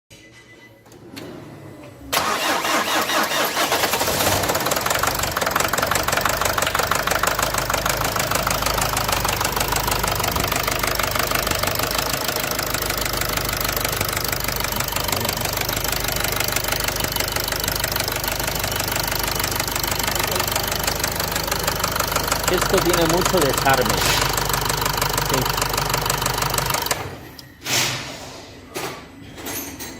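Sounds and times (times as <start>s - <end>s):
diesel engine knocking: 4.5s - 27.1s.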